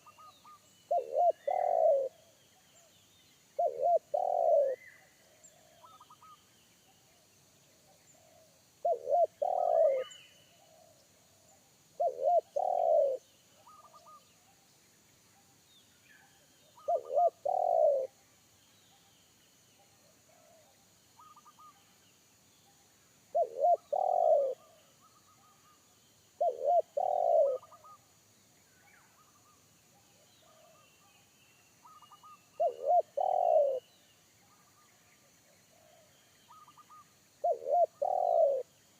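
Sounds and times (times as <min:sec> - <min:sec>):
dove cooing: 0:00.0 - 0:02.2, 0:03.6 - 0:06.4, 0:08.2 - 0:10.9, 0:12.0 - 0:14.2, 0:16.8 - 0:18.1, 0:23.3 - 0:25.1, 0:26.4 - 0:28.0, 0:31.8 - 0:33.8, 0:35.8 - 0:38.7
small birds chirping: 0:00.0 - 0:38.9.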